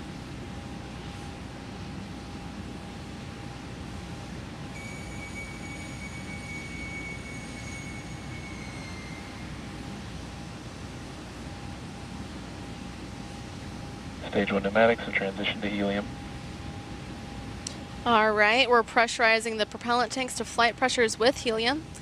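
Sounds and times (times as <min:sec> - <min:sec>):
high whine: 0:00.0 - 0:18.7
faint steady hum: 0:00.0 - 0:22.0.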